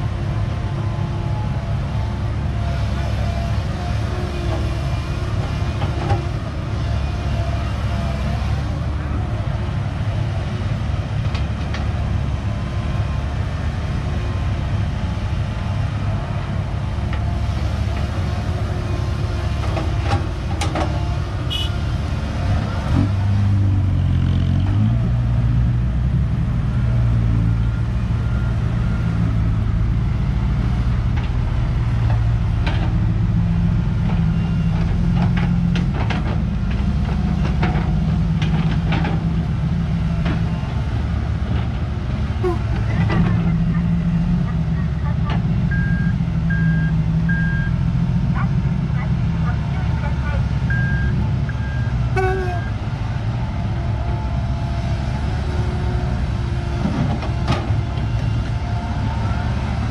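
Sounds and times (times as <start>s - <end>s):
heavy diesel engines running: 0.0s - 59.9s.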